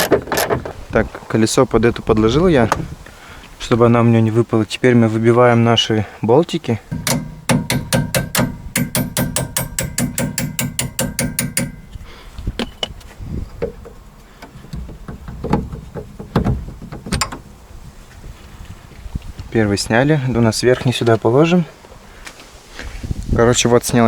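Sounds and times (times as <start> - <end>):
hammer striking steel bolt: 6.9 - 12.1
metal clanks and knocks: 6.9 - 12.9, 13.5 - 17.6.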